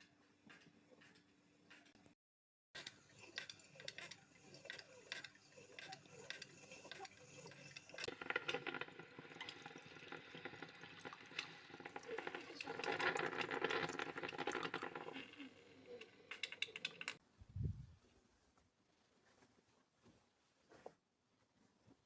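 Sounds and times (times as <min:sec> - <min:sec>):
crackling liquid sound: 0:02.8 - 0:17.2.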